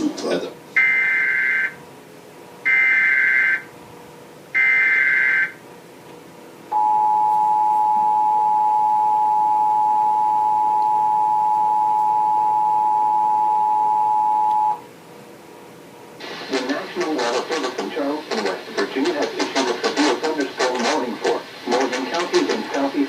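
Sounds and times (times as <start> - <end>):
two-tone attention signal: 6.7 - 14.8.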